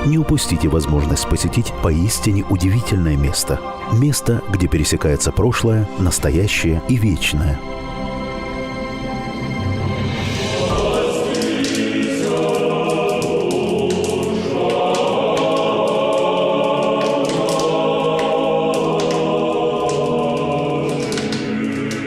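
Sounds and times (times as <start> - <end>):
choir singing chant chords: 7.8 - 22.0.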